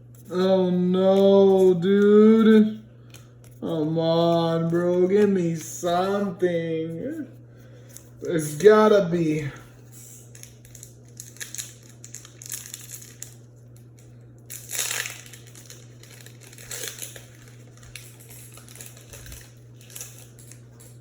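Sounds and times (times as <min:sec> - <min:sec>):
faint low hum: 0:00.0 - 0:21.0
trading cards rustling: 0:00.1 - 0:08.8, 0:10.0 - 0:21.0
foil wrapper crinkling: 0:10.0 - 0:21.0.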